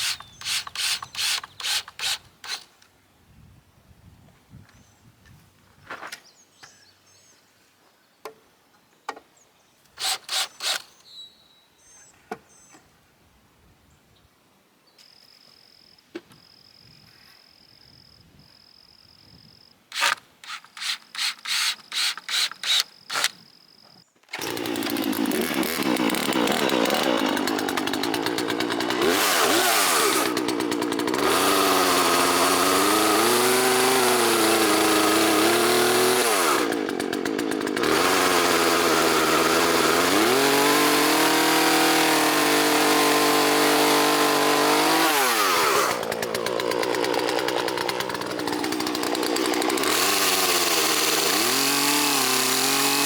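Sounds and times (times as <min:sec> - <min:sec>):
chainsaw cutting wood: 0:00.0 - 0:02.8, 0:09.9 - 0:11.0, 0:19.9 - 0:23.4, 0:24.2 - 0:53.0.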